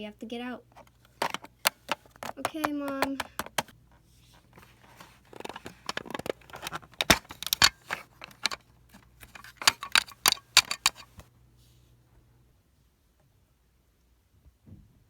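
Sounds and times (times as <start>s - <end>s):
plastic toys clicking and tapping: 0.8s - 3.7s, 5.0s - 11.2s.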